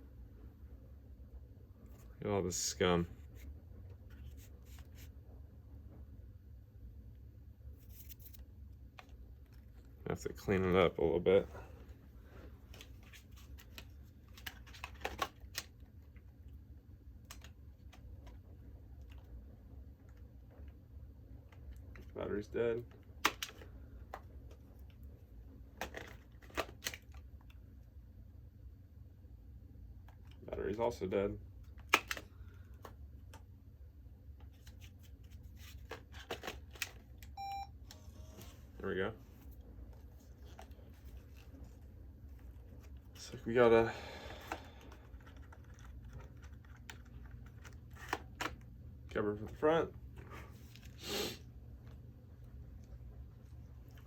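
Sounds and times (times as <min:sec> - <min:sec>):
low steady hum: 0:00.0 - 0:54.0
camcorder handling clicks and rattles: 0:35.9 - 0:37.2
short electronic beep: 0:37.4 - 0:37.7.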